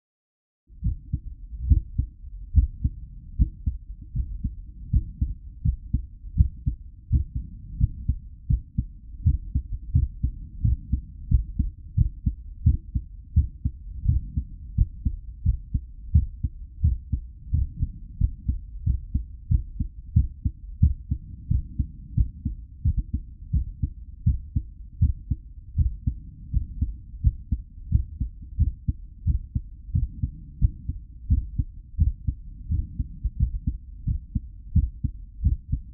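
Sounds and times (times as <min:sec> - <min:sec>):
heartbeat thudding: 0:00.8 - 0:35.9.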